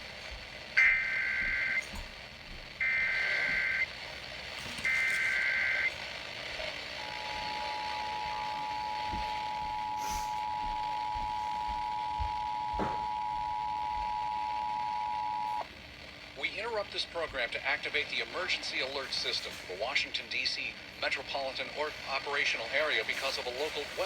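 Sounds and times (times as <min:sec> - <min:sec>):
data burst tones: 0:00.8 - 0:01.8, 0:02.8 - 0:03.9, 0:04.7 - 0:06.0, 0:07.0 - 0:15.7.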